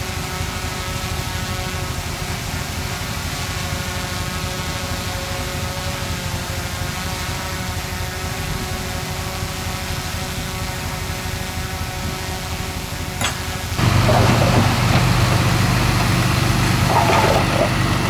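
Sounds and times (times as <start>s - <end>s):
heavy machine diesel engine running: 13.2s - 18.0s.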